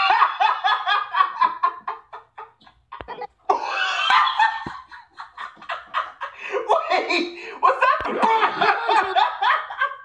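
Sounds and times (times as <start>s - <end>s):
loud high laugh: 0.0s - 6.4s.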